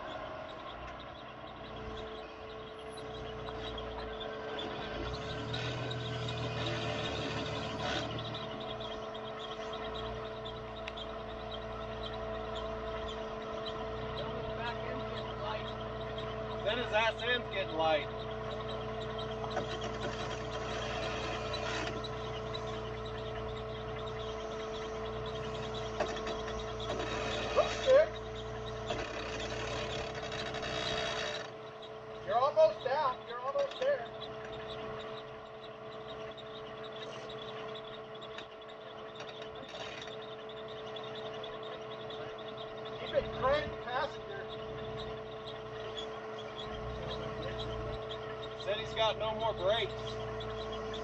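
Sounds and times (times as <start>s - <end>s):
engine running at low revs: 0.0s - 51.0s.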